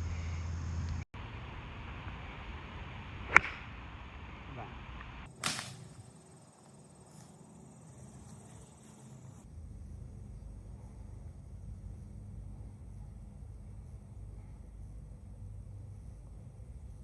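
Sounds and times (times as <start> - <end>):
club swish: 3.3 - 3.7
golf club striking ball: 3.3 - 3.7.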